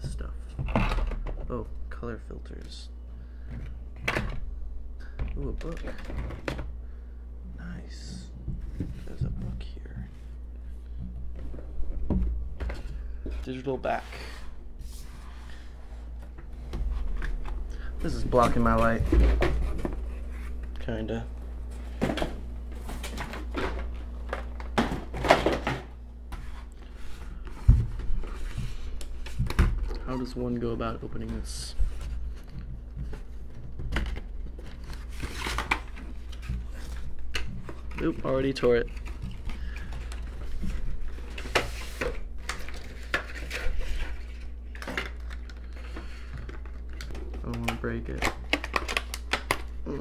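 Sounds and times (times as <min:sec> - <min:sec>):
low electrical hum: 0:00.0 - 0:50.0
plastic parts and packaging handled: 0:16.1 - 0:50.0.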